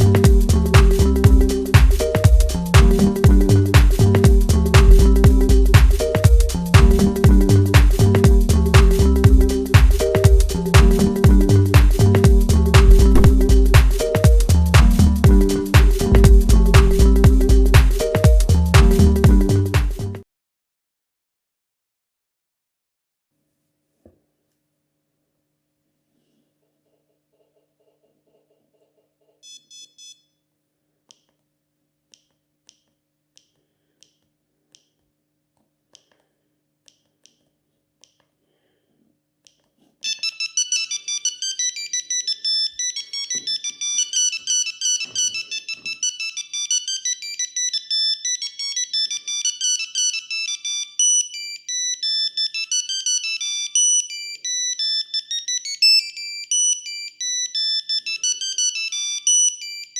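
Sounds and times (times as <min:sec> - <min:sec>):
beeping phone ringtone melody: 0:00.0 - 0:19.8, 0:40.0 - 0:59.9.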